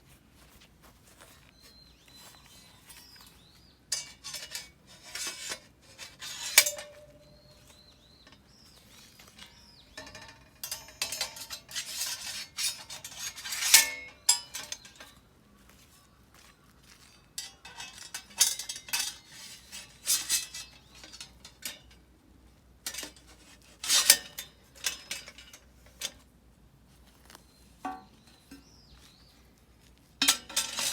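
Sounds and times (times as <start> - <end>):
metal grill parts clanking: 3.9 - 15.2, 17.0 - 22.1, 22.8 - 26.2, 30.2 - 30.9
ringing metal clank: 6.2 - 8.5, 9.4 - 15.2, 17.4 - 22.0, 30.2 - 30.9.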